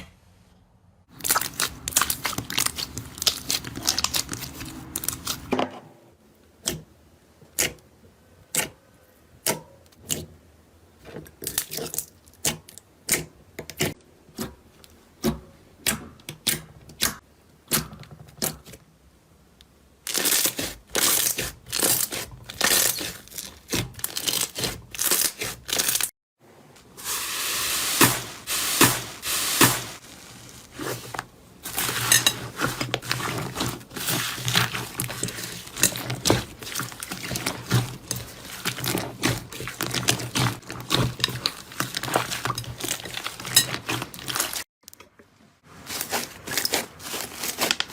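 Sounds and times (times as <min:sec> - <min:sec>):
slime crackling and popping: 0:01.1 - 0:05.4
slime squishing: 0:01.1 - 0:05.5, 0:20.1 - 0:26.1, 0:27.8 - 0:44.7.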